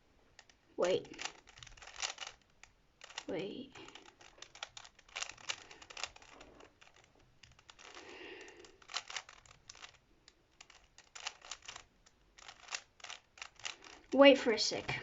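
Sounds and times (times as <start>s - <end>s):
plastic puzzle cube clicking: 0.4s - 14.2s.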